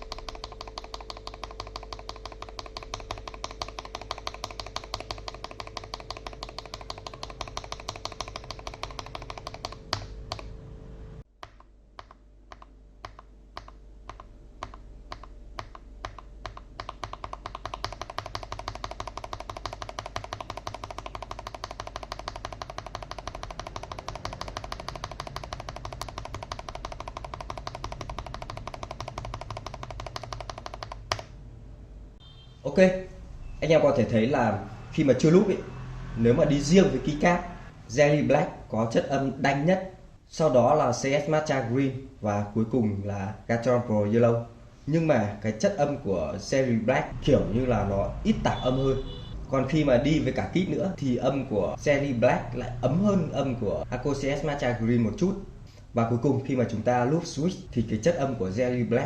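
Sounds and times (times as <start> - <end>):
mechanical keyboard keys clacking: 0.0 - 10.5, 11.4 - 31.2.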